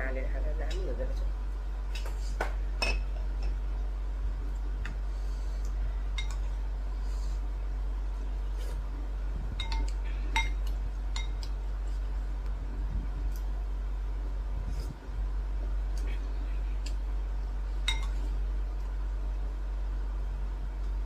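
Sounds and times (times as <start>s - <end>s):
steady low hum: 0.0s - 21.0s
utensil clinking against a dish: 9.6s - 11.5s.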